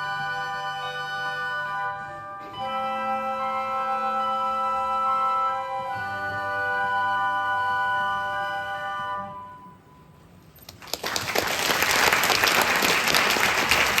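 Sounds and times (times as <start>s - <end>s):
audience applause: 10.7s - 14.0s.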